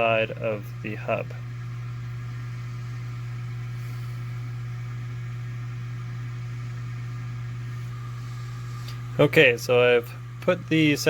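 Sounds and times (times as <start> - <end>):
low background hum: 0.0 - 11.0.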